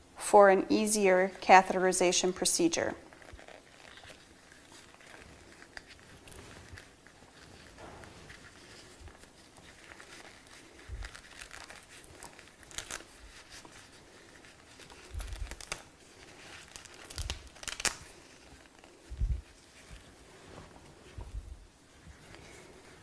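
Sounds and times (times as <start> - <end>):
plastic bag crinkling: 3.0 - 20.4.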